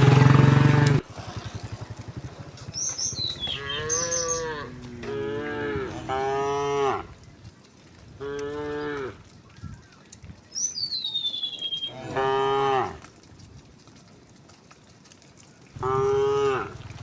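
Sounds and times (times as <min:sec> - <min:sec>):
cattle mooing: 0:00.0 - 0:07.2, 0:08.2 - 0:09.2, 0:11.8 - 0:13.1, 0:15.8 - 0:17.0.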